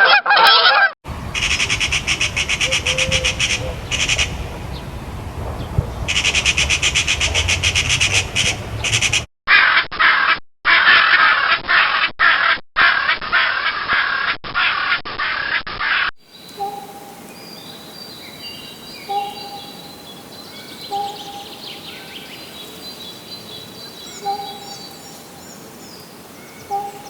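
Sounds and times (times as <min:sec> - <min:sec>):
harsh raspy crow-like calls: 0:00.1 - 0:04.7, 0:06.1 - 0:17.1, 0:19.0 - 0:22.6, 0:26.4 - 0:27.0
high chattering bird calls: 0:01.1 - 0:09.3, 0:16.3 - 0:27.0
thin whistled birdsong: 0:01.2 - 0:09.0, 0:16.3 - 0:27.0.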